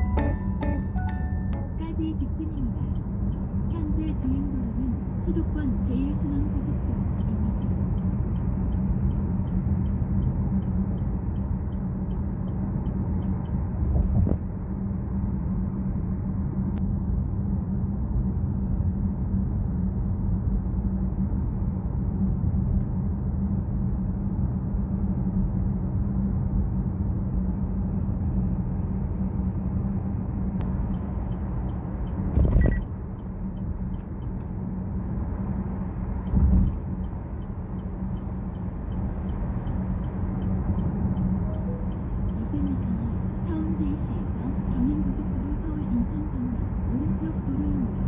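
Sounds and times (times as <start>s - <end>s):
car road and engine rumble: 0.0s - 48.0s
faint regular ticking: 1.8s - 4.7s, 30.6s - 34.5s, 36.1s - 43.3s
short thumps: 32.3s - 32.9s.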